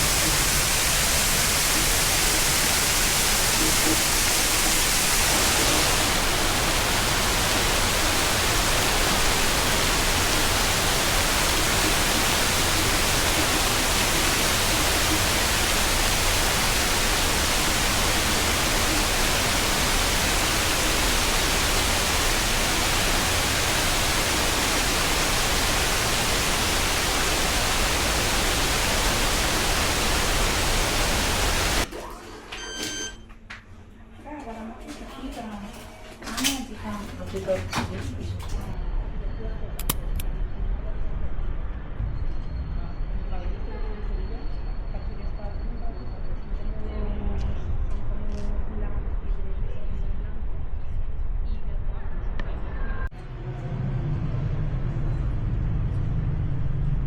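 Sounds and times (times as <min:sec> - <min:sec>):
steady rushing hiss: 0:00.0 - 0:31.9.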